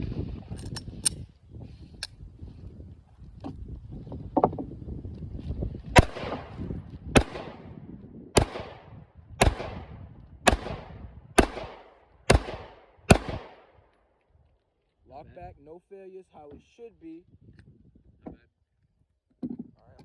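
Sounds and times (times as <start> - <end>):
pistol shots: 6.0 - 7.8, 8.4 - 13.8.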